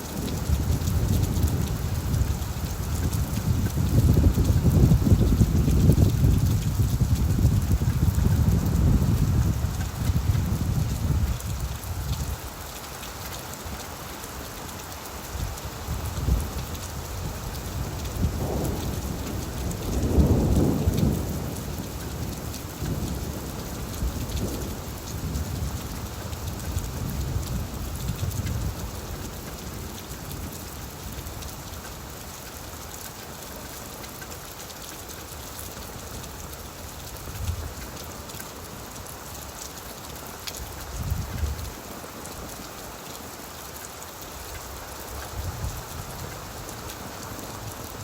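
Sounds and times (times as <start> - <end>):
rolling thunder: 0.0 - 11.4, 17.8 - 26.0
rain falling on leaves: 0.0 - 48.0.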